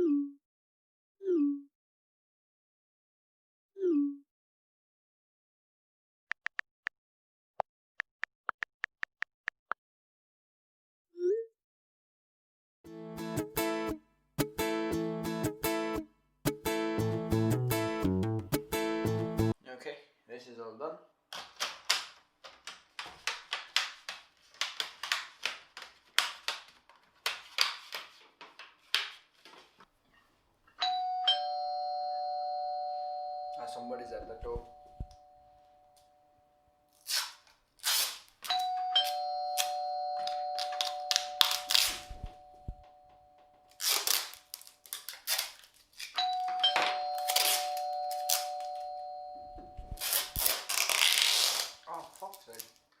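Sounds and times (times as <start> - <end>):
two-note doorbell chime: 30.8 - 35.6, 38.5 - 43.6, 46.2 - 50.1.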